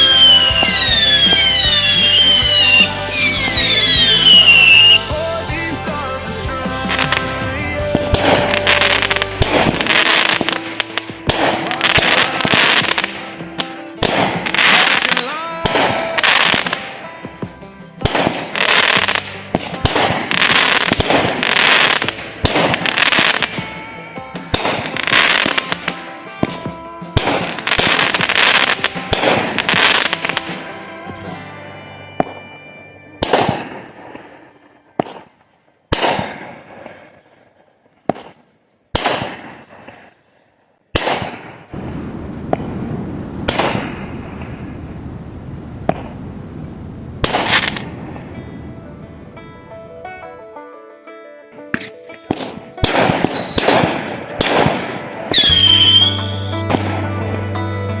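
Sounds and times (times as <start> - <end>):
fireworks bangs and crackling: 0.0 - 30.7, 33.2 - 40.2, 40.9 - 48.3, 52.3 - 57.0
country song: 0.0 - 35.2, 47.2 - 58.0.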